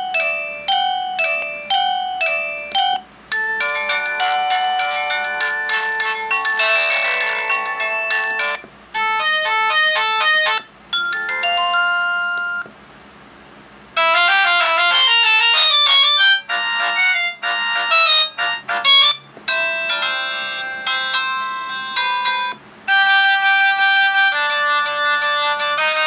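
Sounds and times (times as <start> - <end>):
phone ringtone melodies: 0.0 - 12.7, 14.0 - 26.0.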